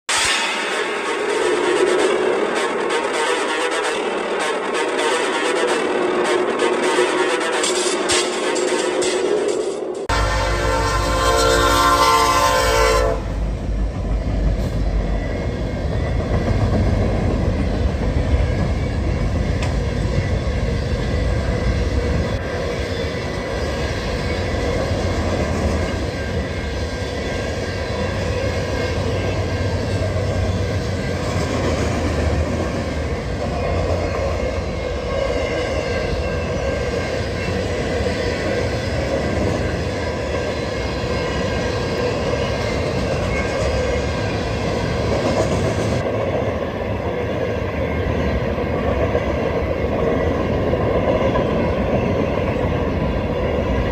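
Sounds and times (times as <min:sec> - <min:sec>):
rail cars rumbling and rattling: 0:00.1 - 0:53.9
train horn: 0:00.9 - 0:08.8, 0:10.1 - 0:13.6.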